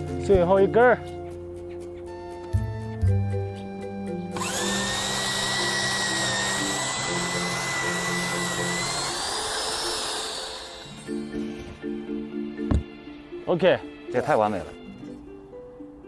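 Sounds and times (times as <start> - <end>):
angle grinder cutting metal: 4.4 - 11.6.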